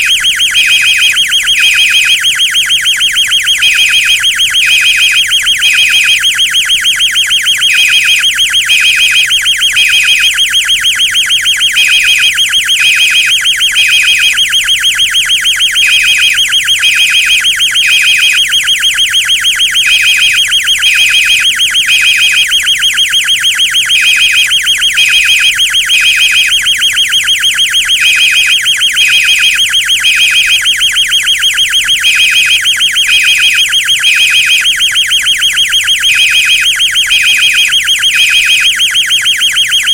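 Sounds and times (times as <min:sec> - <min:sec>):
bright alarm beeps: 0:00.0 - 0:39.9
continuous buzzing fire alarm horn: 0:00.0 - 0:39.9.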